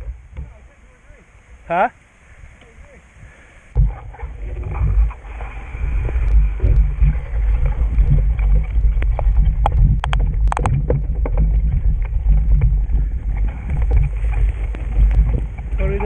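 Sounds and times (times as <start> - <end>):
wind and riding noise rumble: 0.0 - 16.0
sharp clicks and rattles: 3.8 - 16.0.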